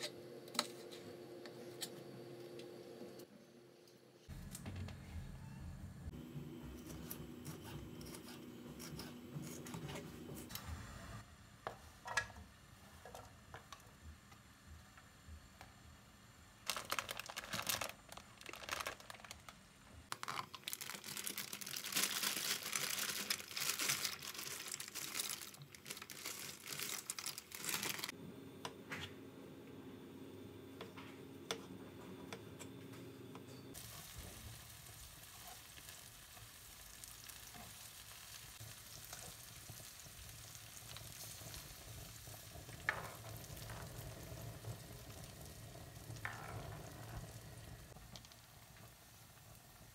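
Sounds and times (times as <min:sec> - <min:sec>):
crinkling: 0:16.6 - 0:28.1
food sizzling in a pan: 0:33.7 - 0:49.9.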